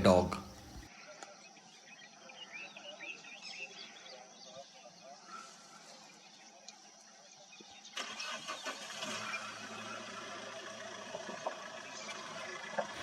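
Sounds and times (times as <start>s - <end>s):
car engine starting and idling: 8.0s - 13.0s.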